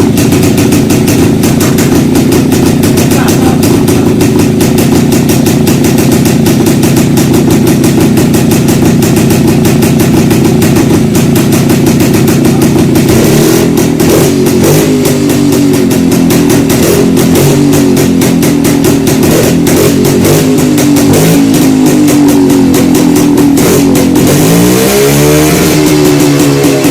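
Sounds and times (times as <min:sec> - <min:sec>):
guitar music: 0:00.0 - 0:05.6
two-stroke motorcycle engine running: 0:00.0 - 0:26.9.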